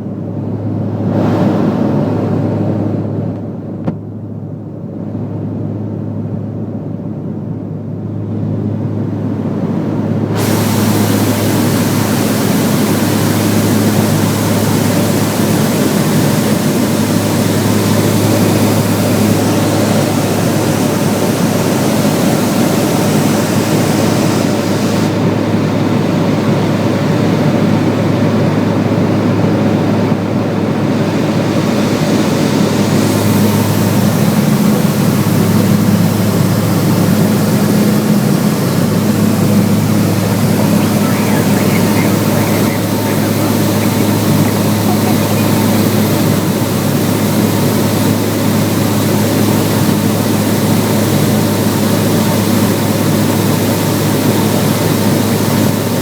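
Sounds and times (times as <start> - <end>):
airplane engines droning: 0.0 - 56.0
broad hiss: 10.4 - 25.3, 31.2 - 56.0.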